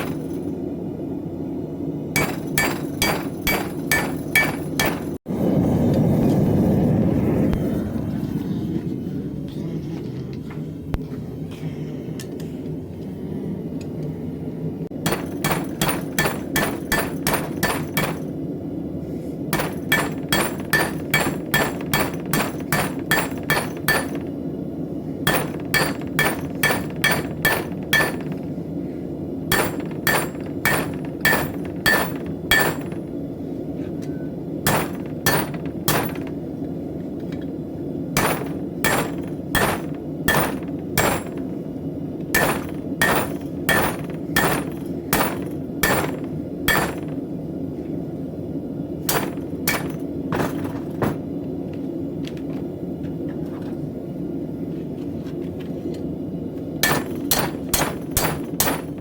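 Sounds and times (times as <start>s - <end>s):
hammer striking steel on anvil: 0.0s - 0.4s, 2.2s - 5.2s, 15.0s - 18.3s, 19.5s - 24.3s, 25.3s - 28.5s, 29.5s - 33.1s, 34.7s - 36.4s, 38.2s - 41.5s, 42.3s - 47.2s, 49.1s - 50.6s, 56.8s - 59.0s
low rumble: 0.0s - 16.1s.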